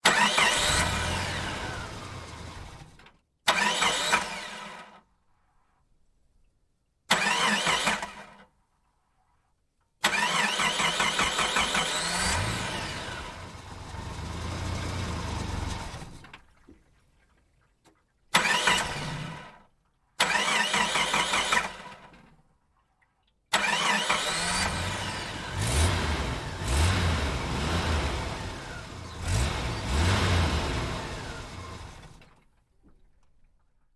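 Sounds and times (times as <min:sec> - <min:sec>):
vehicle engine starting and revving: 0:00.0 - 0:04.8, 0:10.0 - 0:16.4, 0:18.4 - 0:19.5, 0:20.2 - 0:22.1, 0:23.6 - 0:32.3.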